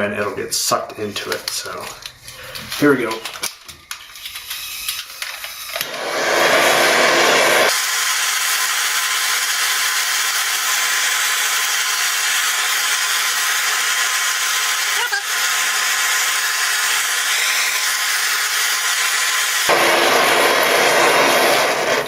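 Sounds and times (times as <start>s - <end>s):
blowtorch flame hissing: 5.7s - 22.0s.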